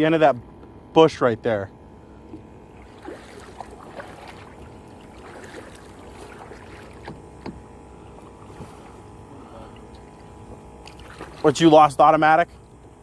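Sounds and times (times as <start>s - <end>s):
water lapping around kayak: 0.0s - 13.0s.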